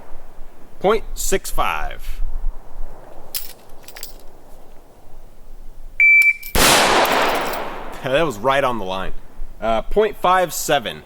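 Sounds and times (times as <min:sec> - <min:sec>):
shot timer beep: 0:06.0 - 0:06.4
rifle shot: 0:06.5 - 0:08.0.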